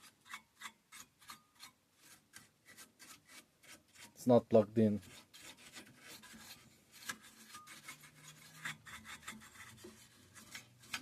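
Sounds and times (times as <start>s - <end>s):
brush rubbing circuit board: 0.0s - 11.0s.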